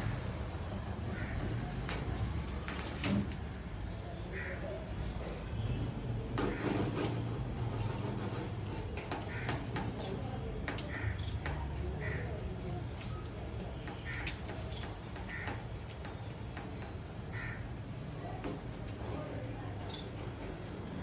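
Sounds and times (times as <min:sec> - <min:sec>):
sharp clicks and knocks: 0:08.7 - 0:17.1.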